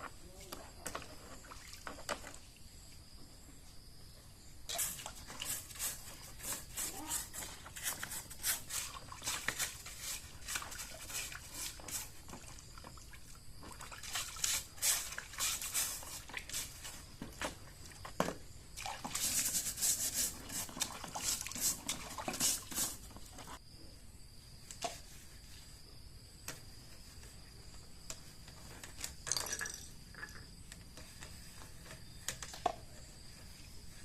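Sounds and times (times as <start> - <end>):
clicks and scraping of hand work: 4.8 - 12.4, 28.0 - 33.7.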